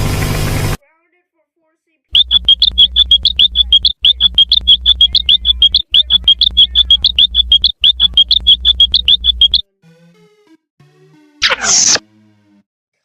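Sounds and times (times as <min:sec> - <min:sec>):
cartoon rapid high chirps: 0:02.2 - 0:09.6, 0:11.4 - 0:12.0.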